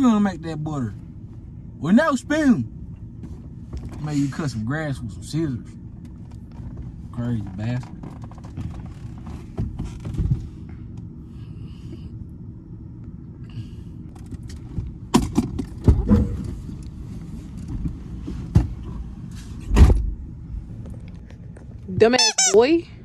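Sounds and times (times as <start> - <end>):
vehicle rumble from inside cab: 0.0 - 23.0
loud thump: 19.7 - 20.2.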